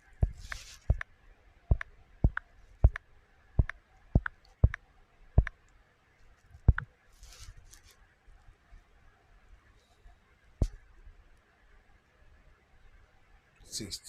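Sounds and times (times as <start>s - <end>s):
sharp clicks: 1.7s - 3.0s, 3.6s - 4.8s.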